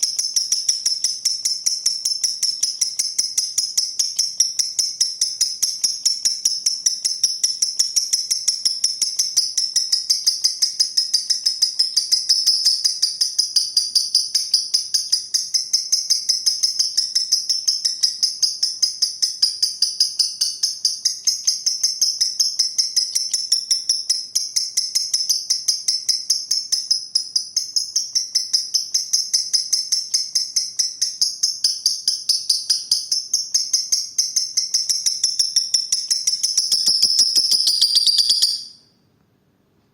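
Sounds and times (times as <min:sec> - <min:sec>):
lovebird chattering chirps: 0:00.0 - 0:38.8.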